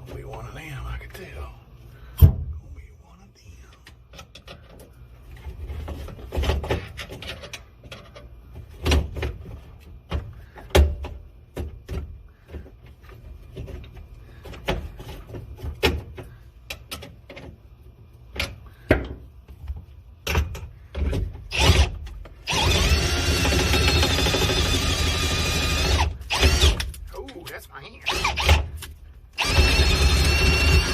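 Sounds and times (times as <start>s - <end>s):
tools knocking and scraping: 4.1s - 17.6s
small power tool running: 21.5s - 26.8s, 29.4s - 30.9s.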